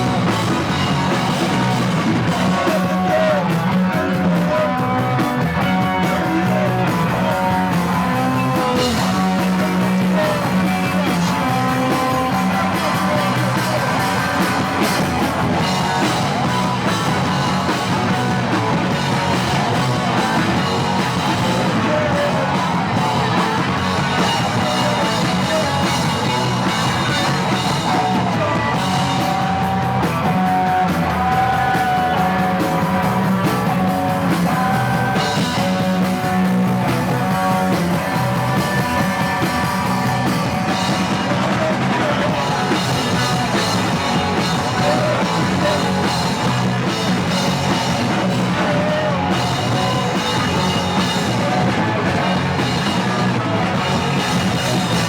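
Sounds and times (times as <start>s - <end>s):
punk rock band playing live: 0.0s - 55.0s.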